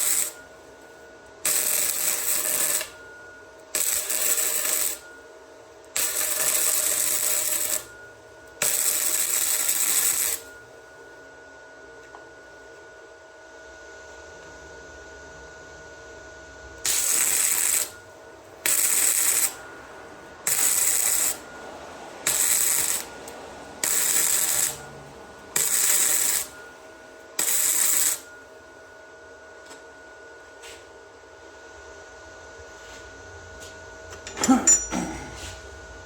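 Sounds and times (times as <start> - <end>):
welder arc bursts: 0.0 - 0.4, 1.4 - 3.0, 3.7 - 5.0, 6.0 - 7.9, 8.6 - 10.5, 16.8 - 18.0, 18.6 - 19.6, 20.4 - 21.5, 22.2 - 26.6, 27.4 - 28.3.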